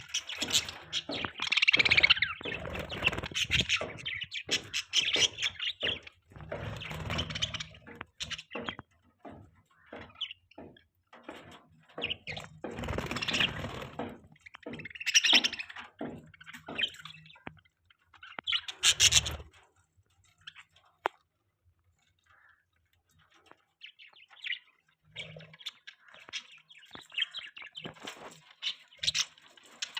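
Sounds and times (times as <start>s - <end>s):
budgerigars chirping and chattering: 0.0s - 10.8s, 12.0s - 19.6s, 23.2s - 29.9s.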